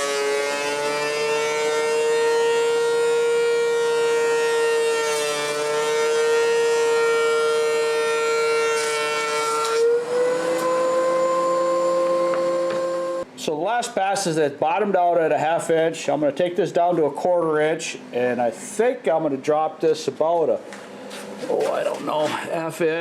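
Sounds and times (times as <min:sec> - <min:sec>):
planer high whine: 0:00.0 - 0:13.3.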